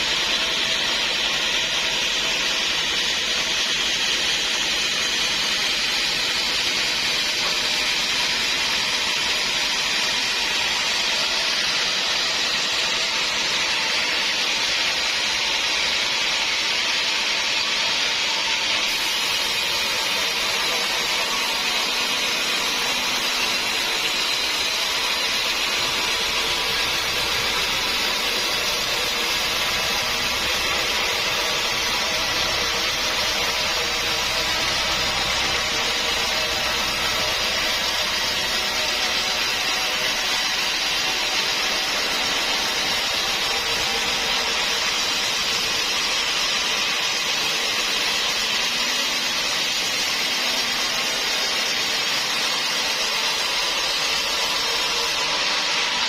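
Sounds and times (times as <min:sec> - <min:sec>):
saw cutting wood hiss: 0:00.0 - 0:56.0.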